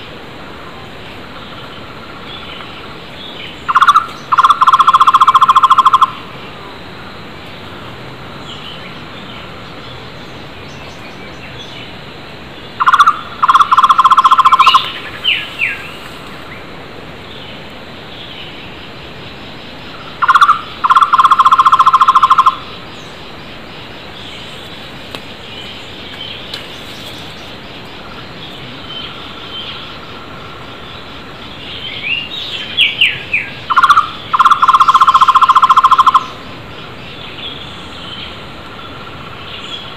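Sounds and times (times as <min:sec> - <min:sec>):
barbet calling with hollow trill: 0:03.5 - 0:06.5, 0:12.7 - 0:16.6, 0:18.7 - 0:39.9.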